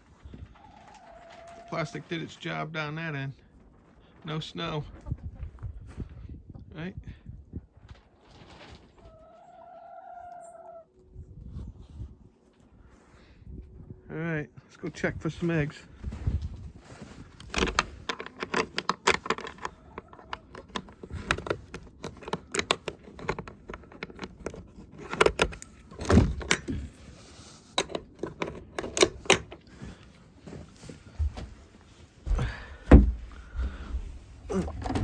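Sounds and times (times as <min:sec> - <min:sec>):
latch and door rattling: 0:17.4 - 0:27.0, 0:27.8 - 0:29.7.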